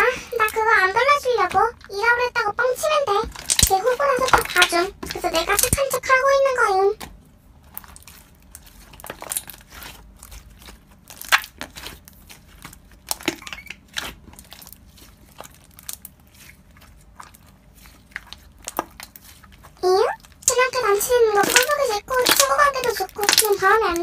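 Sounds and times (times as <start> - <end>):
slime squished by hand: 3.3 - 4.8, 7.6 - 24.0.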